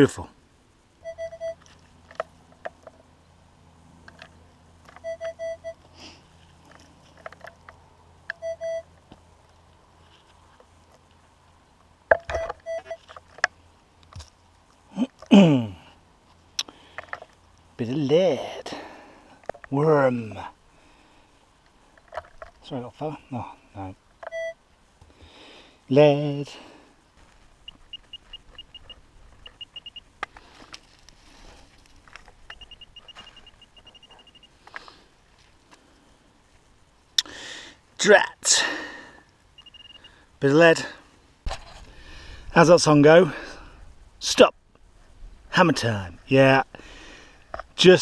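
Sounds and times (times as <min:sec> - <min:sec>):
metal detector beeping: 0:01.0 - 0:01.8, 0:04.9 - 0:05.8, 0:08.3 - 0:08.9, 0:12.1 - 0:13.2, 0:24.2 - 0:24.6, 0:27.6 - 0:30.1, 0:32.4 - 0:34.6, 0:39.6 - 0:40.2.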